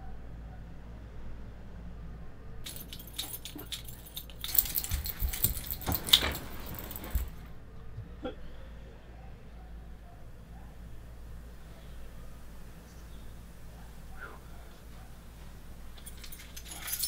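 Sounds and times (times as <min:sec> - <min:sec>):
keys jangling: 0:02.7 - 0:07.4, 0:15.9 - 0:17.0.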